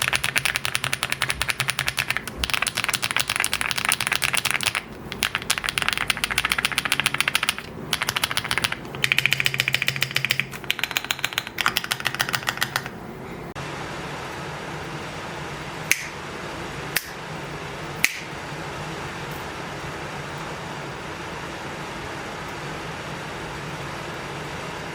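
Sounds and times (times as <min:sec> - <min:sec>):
fast typing on mechanical keyboard: 0:00.0 - 0:13.0.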